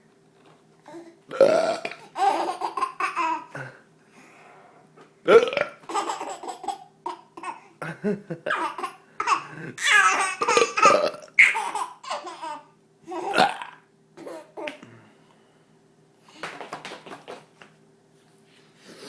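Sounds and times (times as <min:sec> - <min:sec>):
baby laughing: 0:01.9 - 0:03.6, 0:05.8 - 0:07.7, 0:08.5 - 0:13.4, 0:14.2 - 0:14.8.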